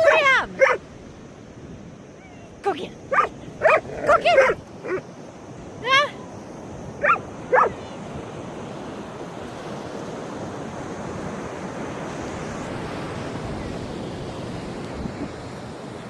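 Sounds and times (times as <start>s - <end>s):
dog barking: 0.0s - 0.8s, 3.1s - 5.0s, 7.0s - 7.8s.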